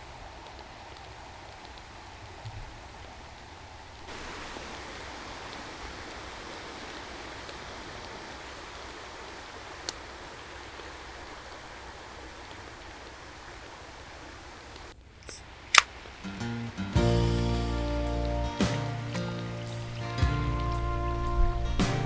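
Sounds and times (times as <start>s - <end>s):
mountain stream rushing: 0.0s - 22.0s
sharp click: 15.2s - 15.9s.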